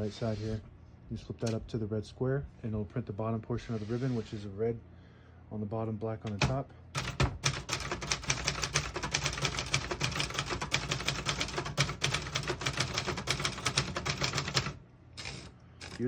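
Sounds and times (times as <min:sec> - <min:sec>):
manual typewriter typing: 0:06.3 - 0:16.0.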